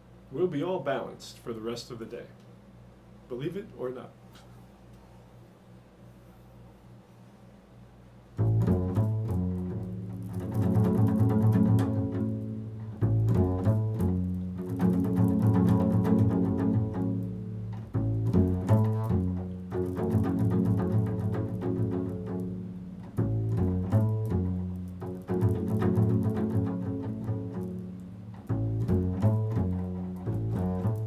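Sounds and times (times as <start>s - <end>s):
solo instrumental music low notes: 8.2s - 31.0s.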